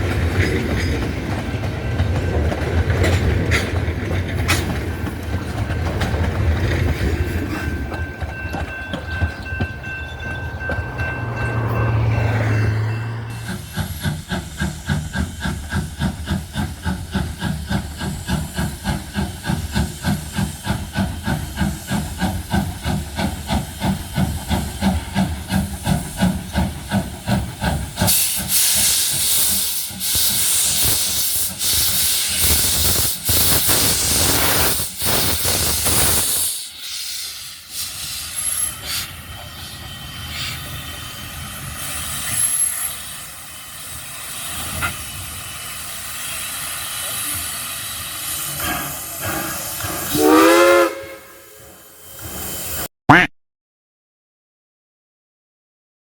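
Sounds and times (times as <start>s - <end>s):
steam locomotive exhaust chuffing: 0.0s - 52.9s
loud steam hiss: 13.3s - 52.9s.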